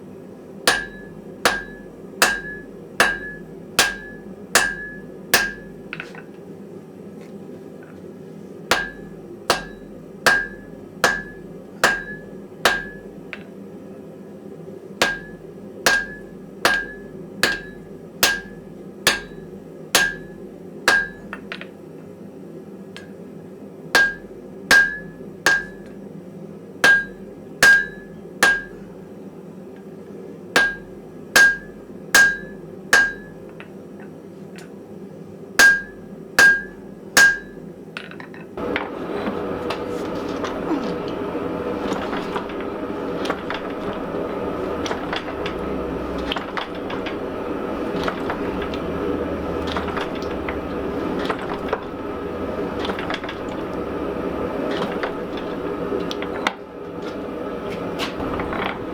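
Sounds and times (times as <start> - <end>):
hammer striking iron on anvil: 0.7 - 5.8, 8.7 - 13.1, 15.0 - 21.4, 24.0 - 26.0, 26.8 - 28.8, 30.6 - 33.4, 35.6 - 37.6
gas forge burner rushing: 38.6 - 58.9.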